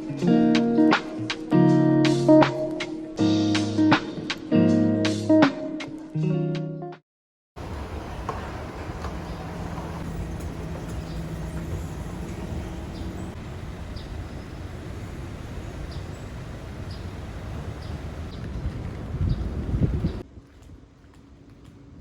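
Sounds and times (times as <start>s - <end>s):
low outdoor rumble: 7.6s - 22.0s.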